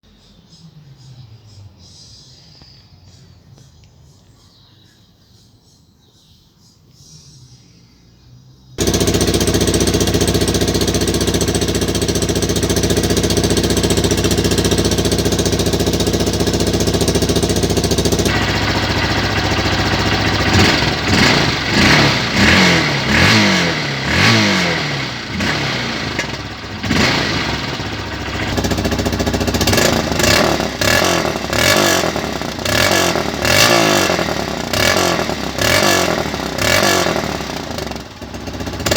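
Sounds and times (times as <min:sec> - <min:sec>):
motorcycle engine revving: 0:08.8 - 0:38.9.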